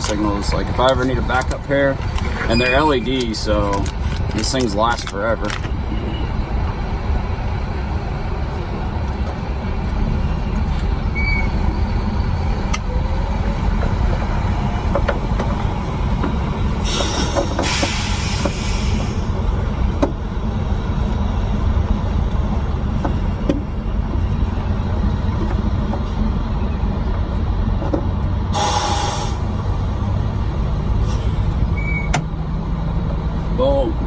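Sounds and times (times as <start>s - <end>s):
heavy vehicles rumbling: 0.0s - 34.0s
hiss of air: 16.8s - 19.3s, 28.6s - 29.5s.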